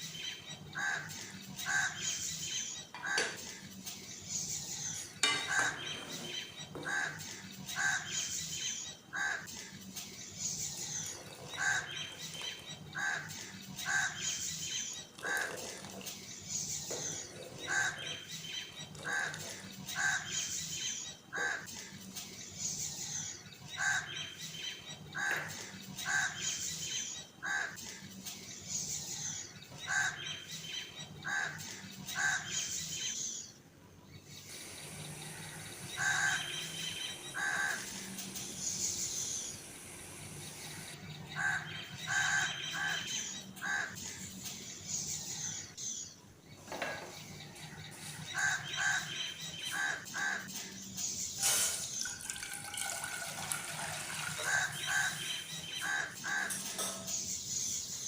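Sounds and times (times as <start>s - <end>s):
harsh bird calls: 0.0s - 58.0s
higher bird chirps: 34.2s - 58.0s.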